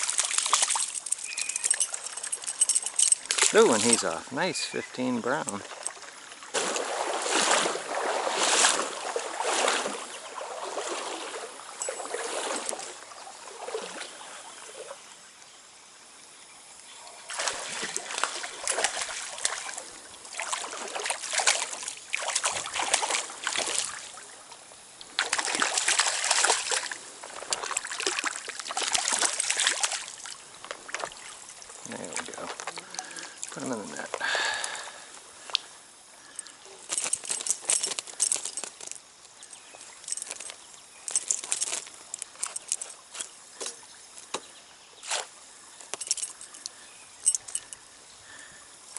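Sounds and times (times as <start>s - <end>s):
stream water splashing: 0.0s - 48.9s.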